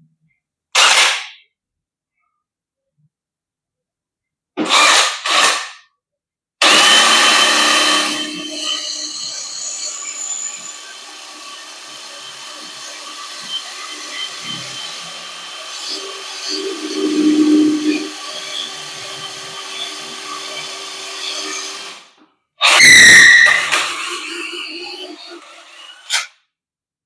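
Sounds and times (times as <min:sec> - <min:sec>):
hammer drill motor whine: 0:04.7 - 0:05.6, 0:06.6 - 0:26.2.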